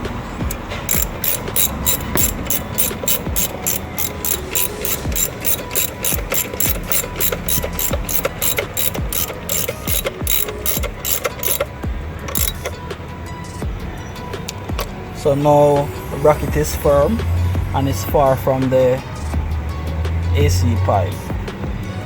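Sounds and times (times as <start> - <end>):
ratchet wrench clicking: 0.4 - 12.8.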